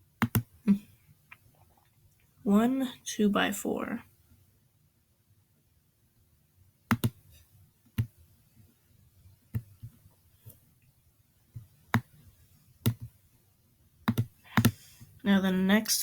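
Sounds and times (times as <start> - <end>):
computer mouse clicking: 0.2 - 0.5, 6.9 - 7.3, 11.6 - 13.2, 14.0 - 14.8.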